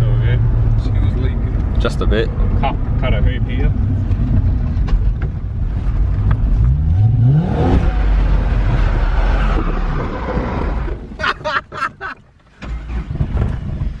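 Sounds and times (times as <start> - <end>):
car engine revving hard: 6.0 - 11.1.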